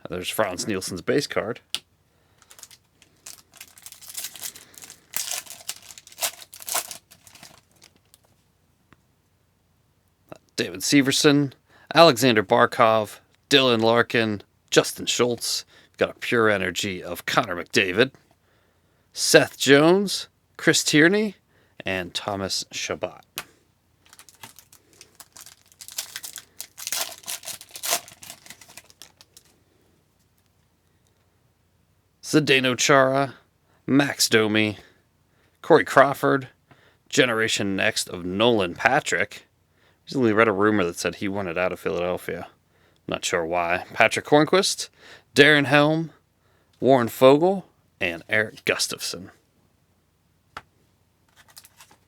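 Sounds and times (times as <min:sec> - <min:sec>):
wrapper crinkling and tearing: 0:02.4 - 0:08.2, 0:24.0 - 0:29.5, 0:51.3 - 0:52.0.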